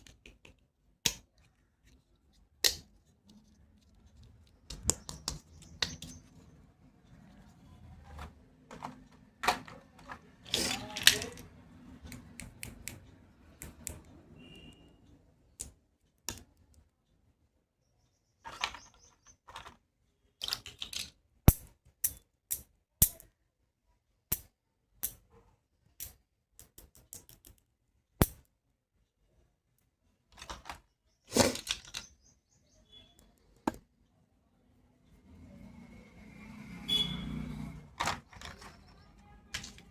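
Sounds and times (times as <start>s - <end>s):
plastic toy tools scraping: 3.3s - 12.3s, 18.5s - 19.8s, 30.4s - 32.3s, 37.5s - 39.9s
plastic toy tools clicking: 8.1s - 14.2s, 20.4s - 23.3s, 38.0s - 39.9s.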